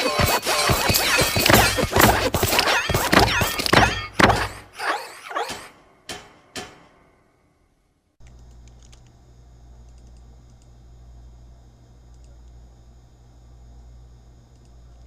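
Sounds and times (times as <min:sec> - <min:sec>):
dense clatter of thuds: 0:01.2 - 0:04.6.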